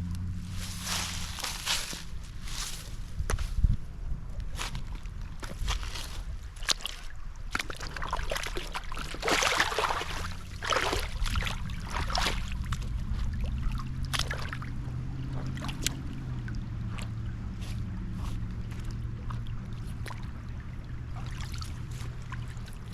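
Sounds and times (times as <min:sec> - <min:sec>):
splashing of wading through water: 0:00.3 - 0:03.0, 0:04.5 - 0:22.9
low rush of water: 0:04.8 - 0:22.9.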